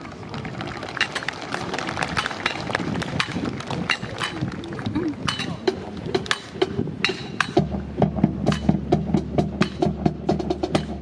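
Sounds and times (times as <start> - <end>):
rifles clicking and slapping: 0.2 - 7.6.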